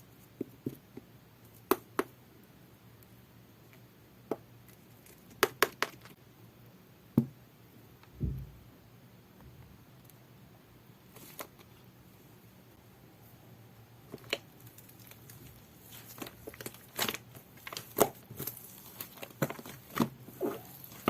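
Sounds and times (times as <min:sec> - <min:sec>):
dull low thump: 0:08.2 - 0:08.7.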